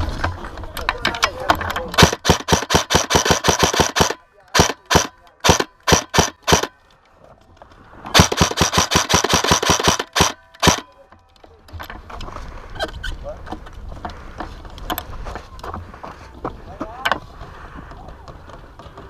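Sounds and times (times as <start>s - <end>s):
airsoft gun rapid bursts: 2.0s - 6.7s, 8.2s - 10.8s
airsoft gun single shots: 2.0s - 6.7s, 8.2s - 10.8s.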